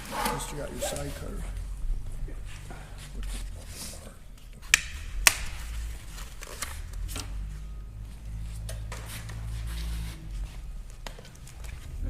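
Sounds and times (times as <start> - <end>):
low steady hum: 0.0 - 12.0
sharp snap: 4.7 - 5.5.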